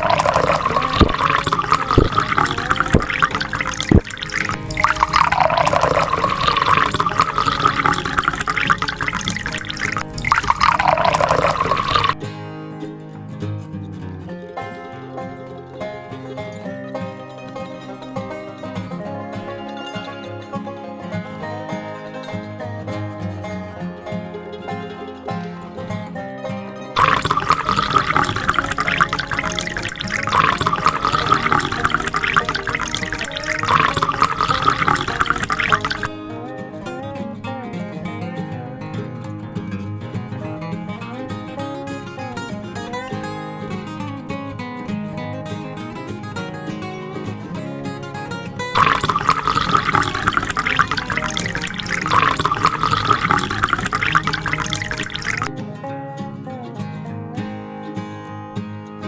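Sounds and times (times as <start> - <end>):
liquid pouring and splashing: 0.0 - 12.2, 27.0 - 36.3, 48.7 - 55.6
water running: 0.0 - 12.2, 27.0 - 36.8, 47.6 - 55.6
banjo music: 0.0 - 59.0.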